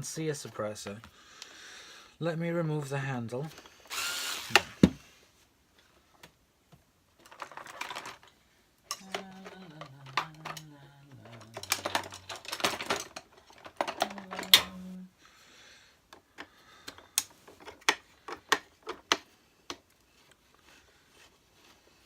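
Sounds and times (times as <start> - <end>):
plastic clicks and rattles: 7.2 - 8.3, 8.9 - 14.9, 16.1 - 19.9.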